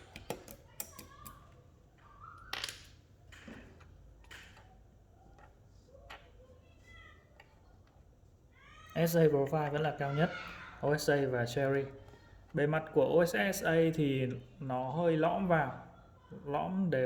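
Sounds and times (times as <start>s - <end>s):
plastic keycaps clicking: 0.0s - 1.4s.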